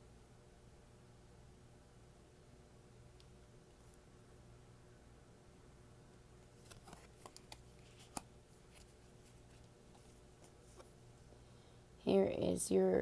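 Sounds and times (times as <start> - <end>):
cards clicking and rustling: 6.4 - 11.0.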